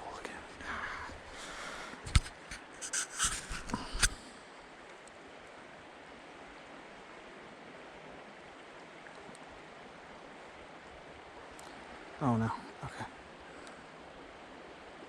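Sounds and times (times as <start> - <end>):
creek water flowing: 0.0 - 15.0
tiny ticks: 4.8 - 5.2, 11.5 - 11.8, 13.6 - 13.8.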